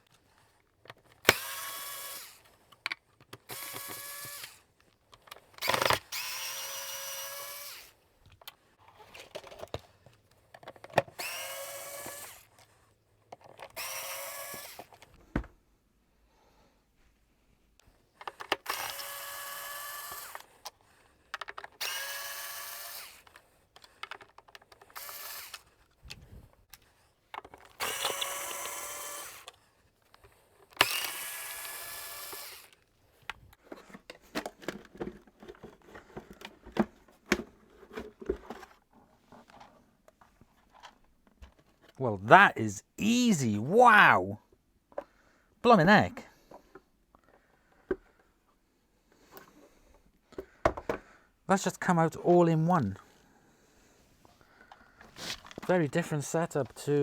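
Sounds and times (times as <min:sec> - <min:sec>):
power drill whine: 0:01.2 - 0:02.4, 0:03.5 - 0:04.6, 0:05.6 - 0:08.0, 0:11.2 - 0:12.5, 0:13.8 - 0:14.9, 0:18.6 - 0:20.5, 0:21.8 - 0:23.3, 0:25.0 - 0:25.6, 0:27.8 - 0:29.5, 0:30.8 - 0:32.8.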